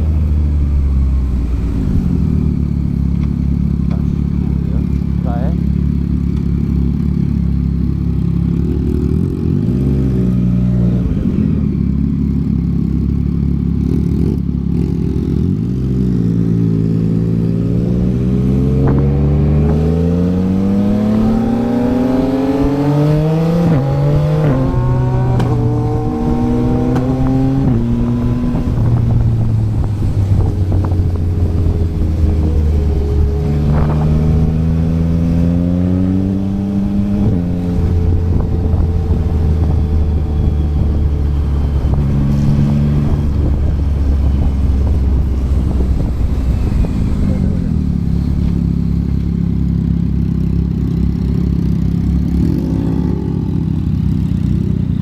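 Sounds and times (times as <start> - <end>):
motorcycle engine shifting up: 16.6 - 55.0.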